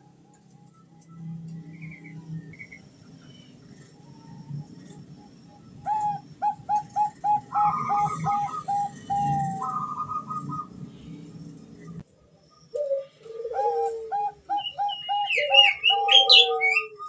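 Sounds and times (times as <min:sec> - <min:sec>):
dove cooing: 0:05.6 - 0:11.9, 0:12.7 - 0:17.0.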